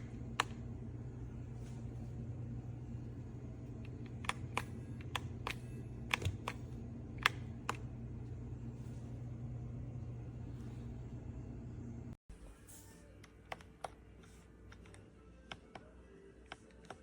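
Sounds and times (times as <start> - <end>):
steady low hum: 0.0 - 13.4.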